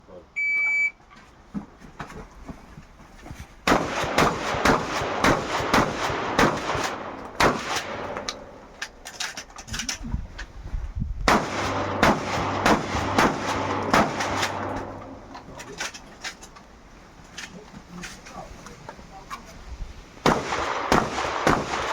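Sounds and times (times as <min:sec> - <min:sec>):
rapid shotgun shots: 0:03.7 - 0:08.7, 0:11.3 - 0:15.2, 0:20.2 - 0:21.9.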